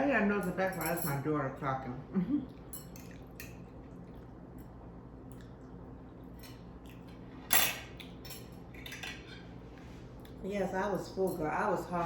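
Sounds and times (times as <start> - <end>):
cutlery scraping a plate: 7.5 - 9.6.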